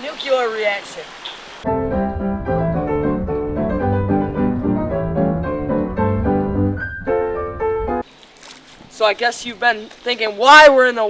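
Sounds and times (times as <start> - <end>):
piano music: 1.6 - 8.1.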